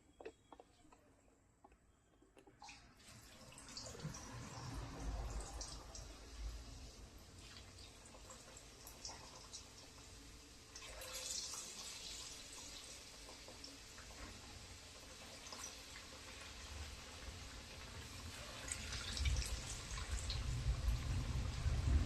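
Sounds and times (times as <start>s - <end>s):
food deep-frying in oil: 2.5s - 22.0s
low rumble: 20.2s - 22.0s.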